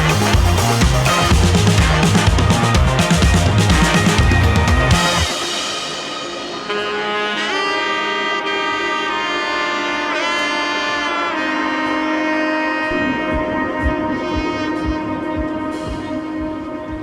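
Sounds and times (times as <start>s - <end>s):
kick drum beat: 0.0s - 5.3s, 13.1s - 17.0s
saxophone-like lead melody: 0.0s - 17.0s.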